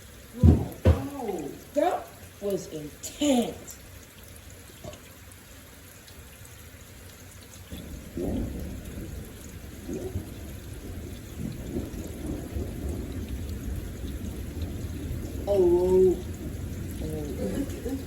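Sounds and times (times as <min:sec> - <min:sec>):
thunder rumbling: 0:07.7 - 0:18.0.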